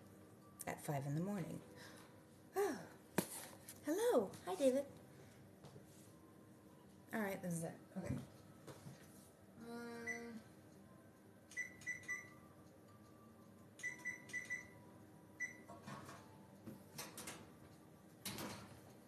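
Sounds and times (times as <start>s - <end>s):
appliance keypad beeping: 11.5s - 13.0s, 13.8s - 15.7s.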